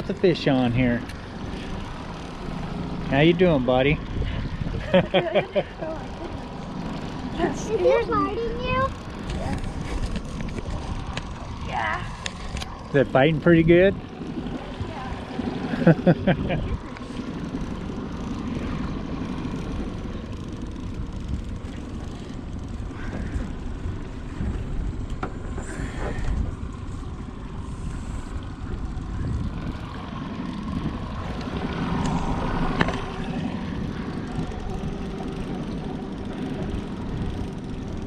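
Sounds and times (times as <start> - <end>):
boat motor running: 0.0 - 38.0
wind rumble on microphone: 3.9 - 5.6, 16.0 - 17.0, 18.9 - 38.0.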